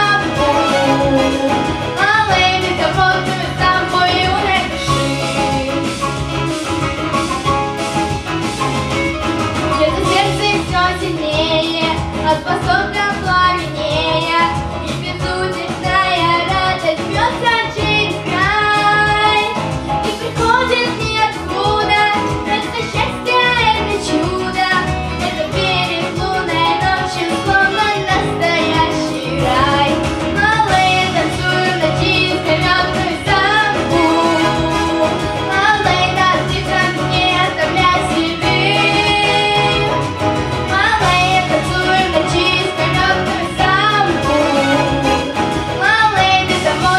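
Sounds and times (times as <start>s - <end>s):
backing track with steady beat: 0.0s - 46.9s
violin playing samba melody: 25.6s - 46.9s.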